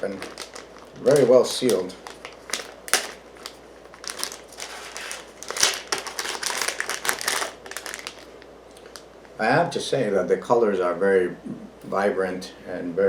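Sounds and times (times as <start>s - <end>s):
plastic packaging crinkling: 0.0s - 9.4s.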